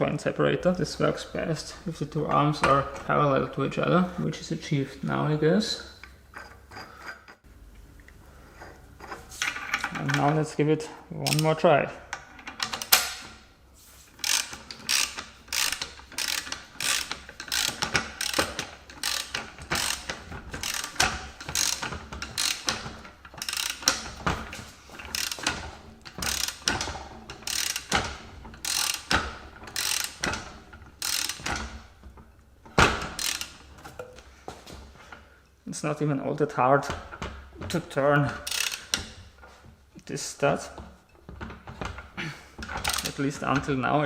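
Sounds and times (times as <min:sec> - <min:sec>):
ratchet wrench clicking: 0:14.2 - 0:24.2, 0:25.0 - 0:31.7, 0:33.1 - 0:33.7, 0:38.4 - 0:39.2, 0:42.8 - 0:43.2.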